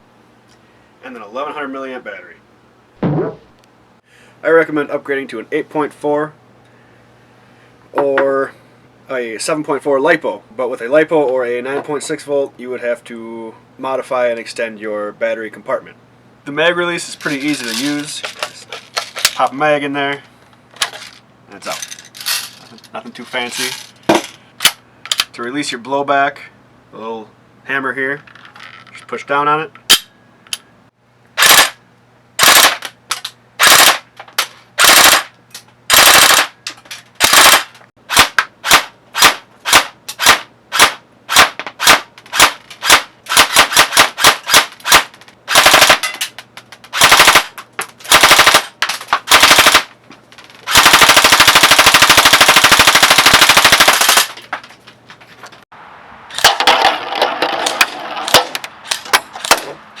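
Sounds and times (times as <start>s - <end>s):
airsoft gun firing: 31.4s - 31.8s, 32.4s - 32.8s, 33.6s - 34.0s, 34.8s - 35.3s, 35.9s - 36.6s, 37.2s - 46.0s, 46.9s - 49.9s, 50.7s - 54.4s.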